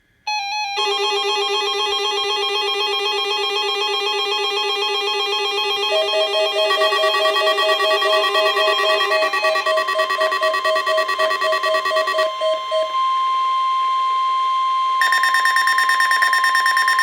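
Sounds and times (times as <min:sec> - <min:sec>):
electronic tones warbling: 0:05.9 - 0:13.0
pulsing electronic tone: 0:05.9 - 0:13.1, 0:15.0 - 0:17.0.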